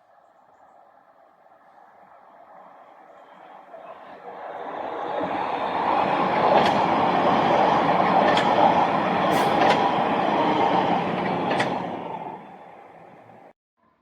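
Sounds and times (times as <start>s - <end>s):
train wheels rumbling on rail: 3.2s - 13.5s
sharp rail clicks: 5.7s - 13.5s.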